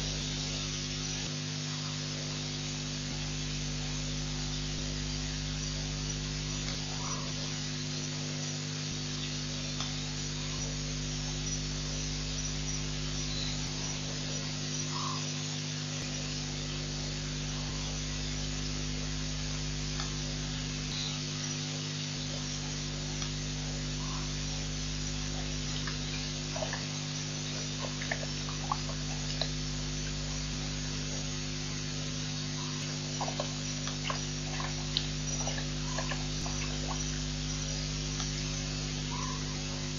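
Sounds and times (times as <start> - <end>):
electrical mains hum with hiss: 0.0 - 39.9
faint short animal calls: 39.1 - 39.6.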